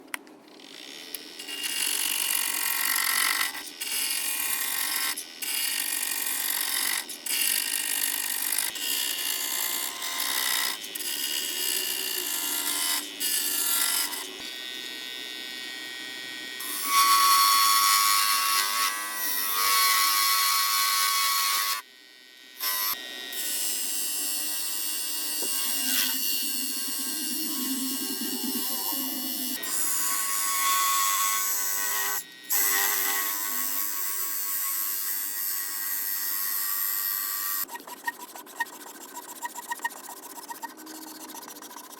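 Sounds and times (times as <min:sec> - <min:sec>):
tool cutting wood hiss: 0:22.6 - 0:35.4.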